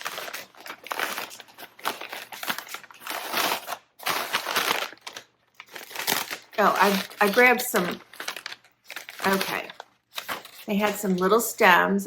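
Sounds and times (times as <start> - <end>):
shopping bag crinkling and rustling: 0.0 - 11.7.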